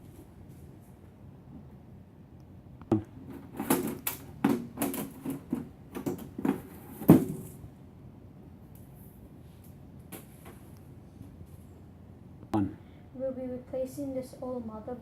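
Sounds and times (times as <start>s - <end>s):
computer case knocks and rattles: 3.2s - 7.6s.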